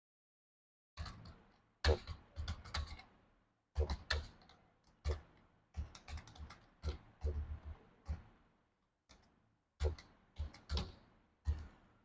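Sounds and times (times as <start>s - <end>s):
computer keyboard typing: 5.9s - 7.5s.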